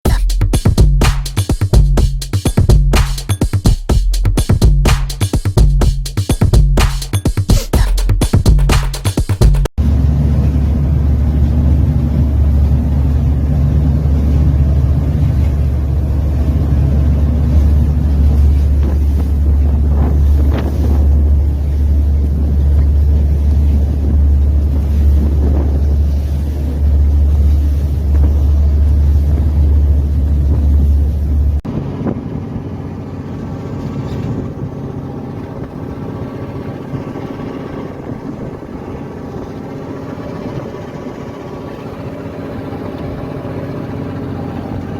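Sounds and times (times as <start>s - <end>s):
boat engine droning: 8.6s - 44.9s
wind on microphone: 9.8s - 44.9s.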